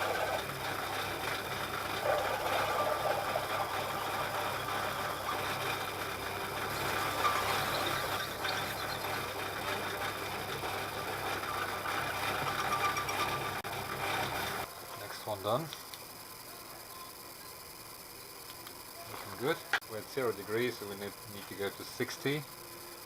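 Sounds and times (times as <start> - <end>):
milling machine drilling metal: 0.0 - 14.7.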